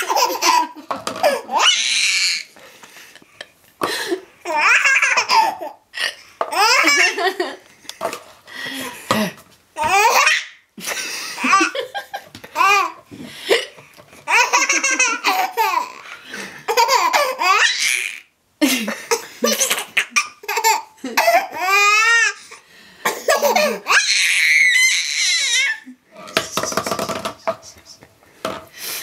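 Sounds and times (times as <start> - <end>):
baby laughing: 0.0 - 2.5, 4.0 - 7.6, 9.8 - 10.6, 11.2 - 13.0, 14.3 - 18.3, 18.9 - 22.4, 23.1 - 27.8.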